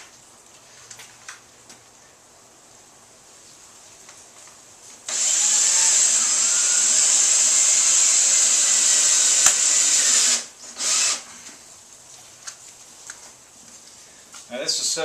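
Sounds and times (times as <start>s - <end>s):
power drill driving screw: 5.1s - 11.3s
sharp drill click: 5.1s - 11.3s.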